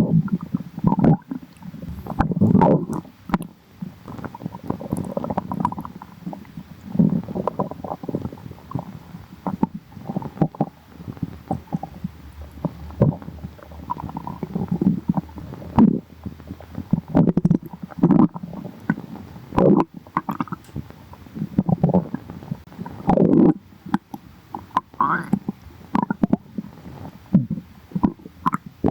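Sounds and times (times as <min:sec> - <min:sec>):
stomach growling: 0:00.0 - 0:28.9.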